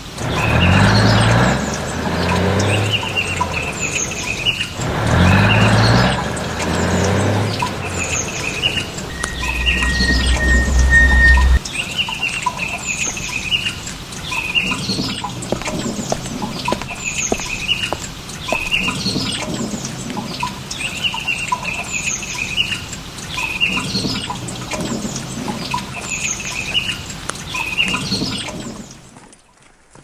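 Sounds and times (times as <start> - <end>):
small birds chirping: 0.0 - 11.6.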